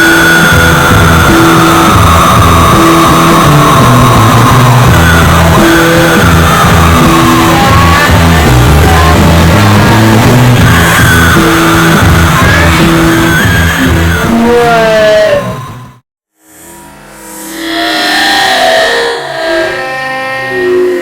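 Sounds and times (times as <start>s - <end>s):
loud rock music: 0.0s - 16.0s.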